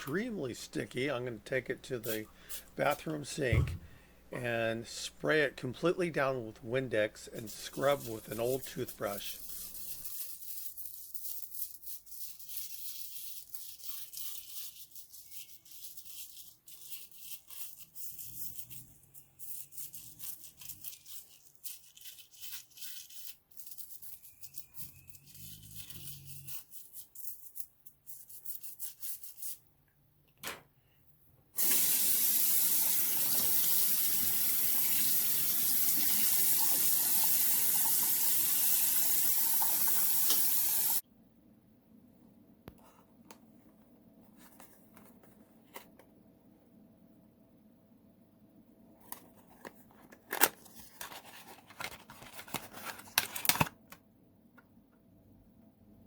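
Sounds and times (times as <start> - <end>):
toothbrush scrubbing rubber keypad: 2.0 - 3.2, 7.4 - 29.6
sink tap running: 31.6 - 41.0.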